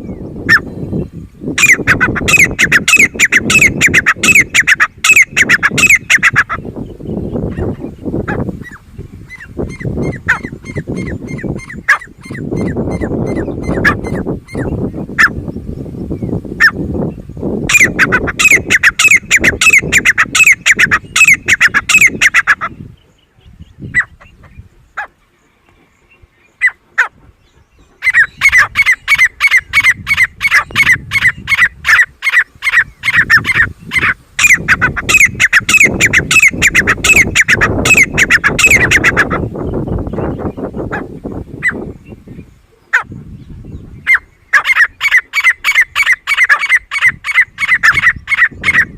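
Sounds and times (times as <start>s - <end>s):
bird shrill repeated calls: 1.6s - 6.8s, 8.3s - 15.4s, 17.7s - 22.9s, 28.0s - 41.9s, 44.0s - 48.9s.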